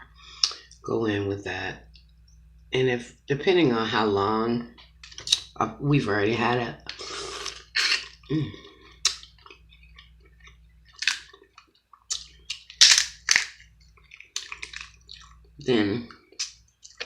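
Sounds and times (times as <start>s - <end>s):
wet mouth clicks and smacks: 0.4s - 0.6s, 9.0s - 15.4s, 16.4s - 17.0s
chewing: 13.9s - 15.6s.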